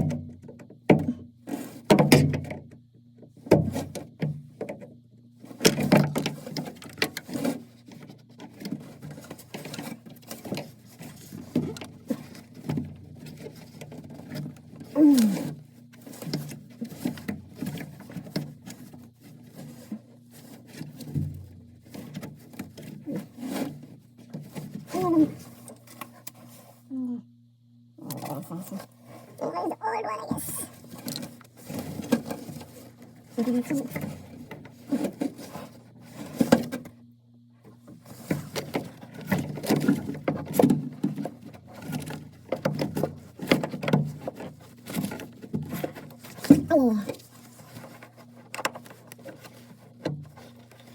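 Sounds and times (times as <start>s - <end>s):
clicks knocks and rubbing: 29.8s - 36.9s, 37.6s - 50.9s
parts knocking and rattling: 30.7s - 36.9s.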